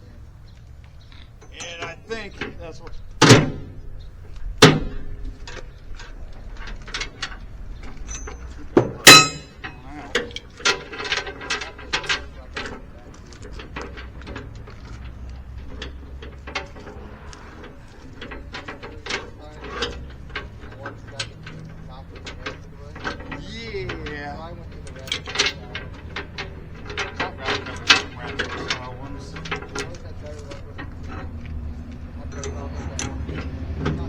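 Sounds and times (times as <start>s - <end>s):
light clicks and rattles: 0.0s - 34.0s
ringing metallic clang: 1.4s - 12.9s
loud metal strikes: 8.8s - 9.8s.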